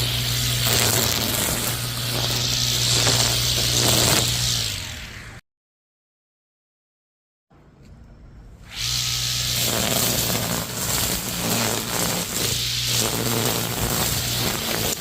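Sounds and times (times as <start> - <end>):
electric grass cutter running: 0.0 - 5.4, 8.7 - 15.0.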